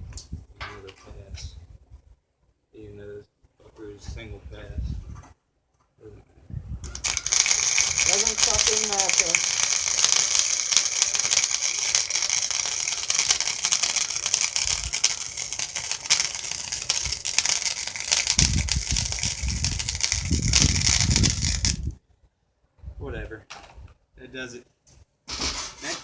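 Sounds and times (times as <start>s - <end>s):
welding arc crackling: 6.8s - 21.9s.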